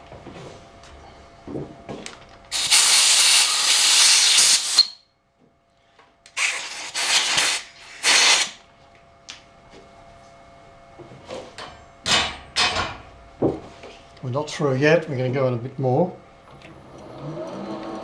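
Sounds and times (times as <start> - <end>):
pressurised spray hissing: 2.5 - 5.0, 6.4 - 8.6.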